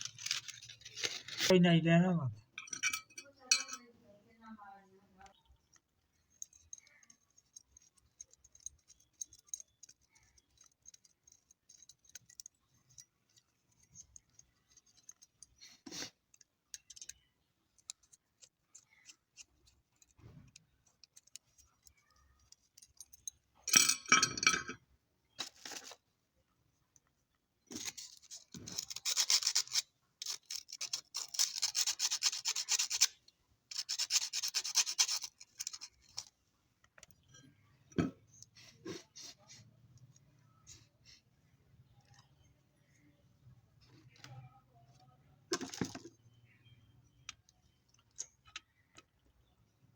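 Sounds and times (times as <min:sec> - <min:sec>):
small parts clicking: 0:00.0 - 0:01.5, 0:05.2 - 0:24.2, 0:26.9 - 0:37.3
scraping or rubbing: 0:27.7 - 0:36.3.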